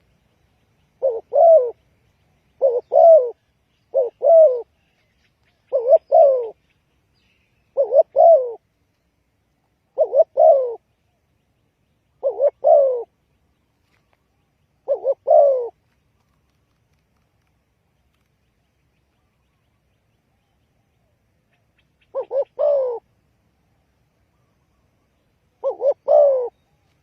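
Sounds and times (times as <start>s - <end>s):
dove cooing: 0.9s - 1.8s, 2.5s - 6.7s, 7.7s - 8.7s, 9.8s - 11.0s, 12.1s - 13.2s, 14.8s - 15.8s, 21.0s - 23.1s, 24.3s - 26.9s.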